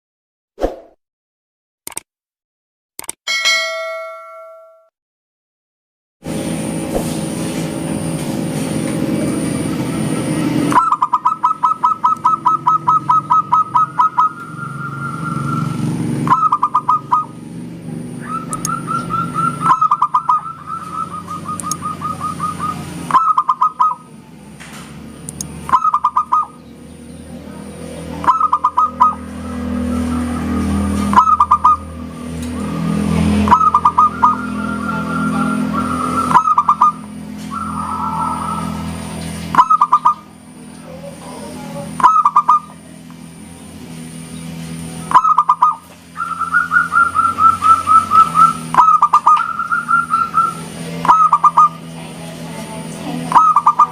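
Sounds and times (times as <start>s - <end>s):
dove cooing: 10.8s - 15.6s, 16.3s - 17.4s, 18.2s - 24.1s, 25.7s - 26.6s, 27.6s - 32.0s, 33.4s - 38.9s, 39.6s - 40.3s, 42.0s - 42.8s, 45.1s - 51.9s, 53.2s - 53.9s.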